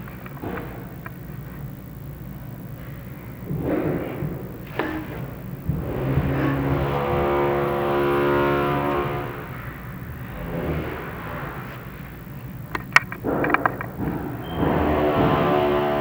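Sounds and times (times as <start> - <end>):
motor running: 3.0 - 16.0
sharp knocks: 3.4 - 9.6.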